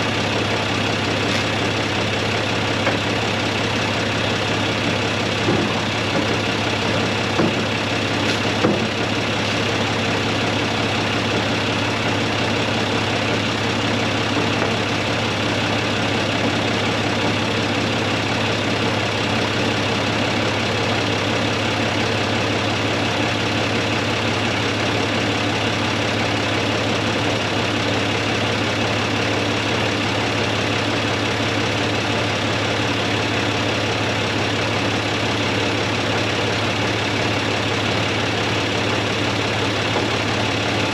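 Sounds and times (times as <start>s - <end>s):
tractor diesel engine idling: 0.0s - 40.9s
short knocks: 5.4s - 9.6s.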